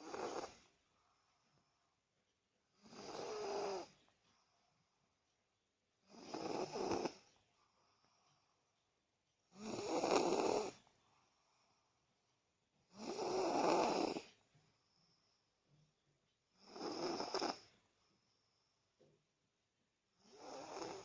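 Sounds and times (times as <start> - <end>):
child snoring loudly: 0.0 - 0.6, 2.8 - 3.9, 6.1 - 7.2, 9.6 - 10.8, 12.9 - 14.3, 16.6 - 17.6, 20.2 - 21.0.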